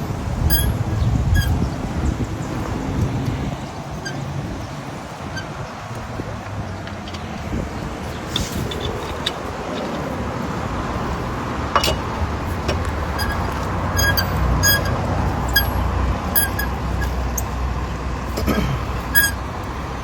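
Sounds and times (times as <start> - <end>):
roadside traffic rumble: 0.0 - 20.0
lug wrench clinking on nuts: 0.4 - 1.6, 4.0 - 4.3, 8.3 - 10.1, 11.8 - 17.6, 18.3 - 19.4.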